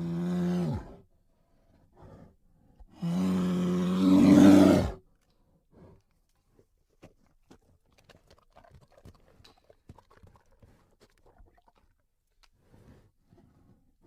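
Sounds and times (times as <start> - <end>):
bear roaring: 3.0 - 5.0.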